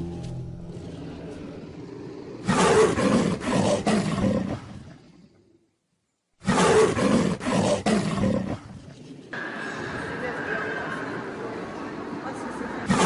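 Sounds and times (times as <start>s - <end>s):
gravelly creature roar: 0.0s - 5.6s.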